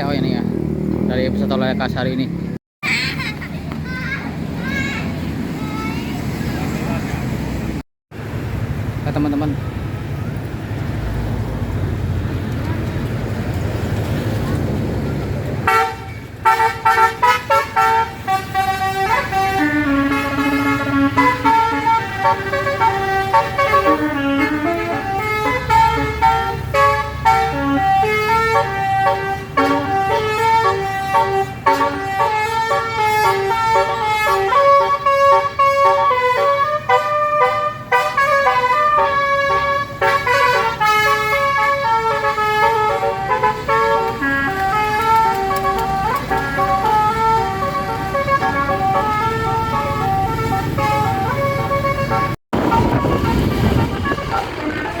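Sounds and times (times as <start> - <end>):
musical air horn melody: 15.6 - 55.0
low engine rumble: 40.8 - 55.0.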